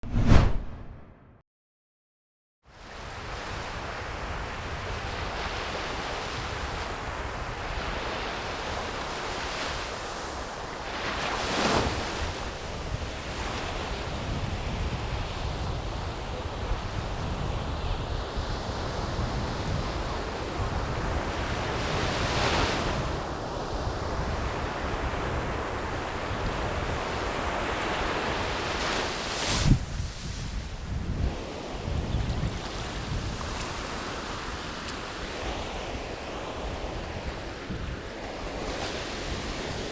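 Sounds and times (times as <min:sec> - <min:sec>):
wind on microphone: 0:00.0 - 0:01.1, 0:11.8 - 0:34.7.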